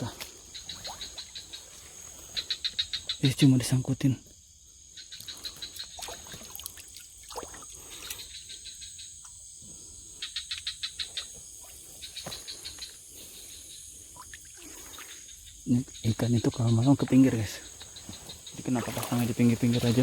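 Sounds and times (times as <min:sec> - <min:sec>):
rapid clicking calls: 0:00.0 - 0:03.7, 0:10.2 - 0:20.0
frogs calling: 0:00.0 - 0:20.0
high-pitched insect drone: 0:00.0 - 0:20.0.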